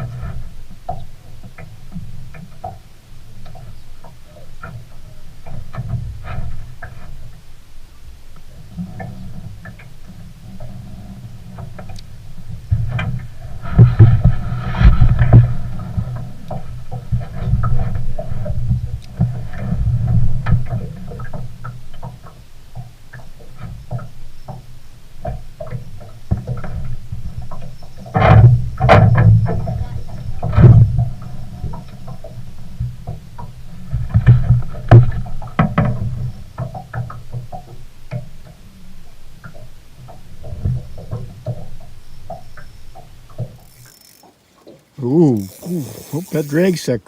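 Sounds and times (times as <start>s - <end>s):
boat engine rumble: 41.4s - 47.0s.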